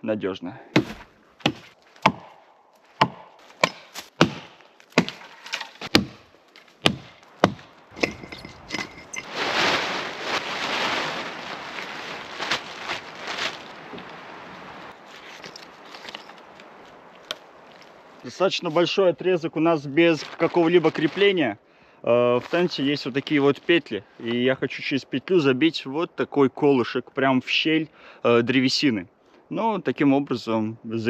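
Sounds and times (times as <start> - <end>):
branches rustling: 0.7 - 21.4, 22.3 - 24.4
axe chopping branches: 0.8 - 8.8.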